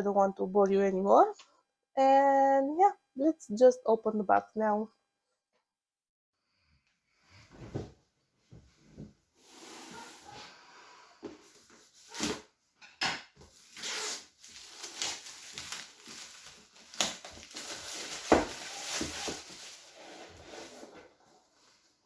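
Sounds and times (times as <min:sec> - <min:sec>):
cardboard box rustling and scraping: 0:17.4 - 0:21.8.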